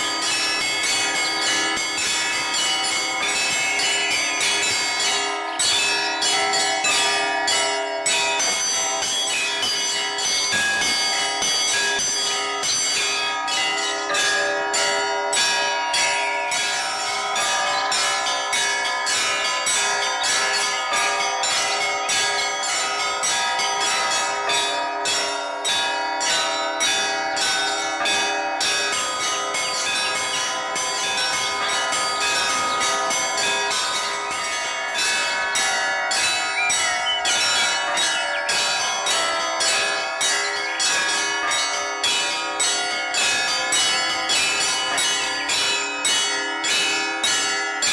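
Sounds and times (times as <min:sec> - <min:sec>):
church bells pealing: 0:00.0 - 0:47.9.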